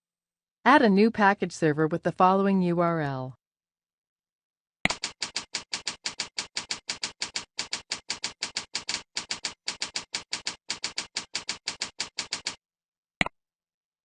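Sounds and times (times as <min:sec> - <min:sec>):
computer keyboard typing: 0:04.9 - 0:12.6.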